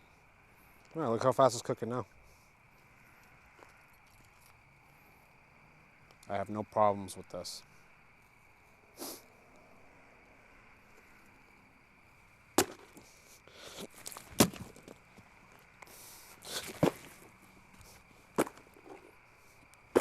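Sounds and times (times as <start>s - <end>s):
sharp cracks: 12.5s - 13.1s
crunching and rustling: 12.6s - 20.0s.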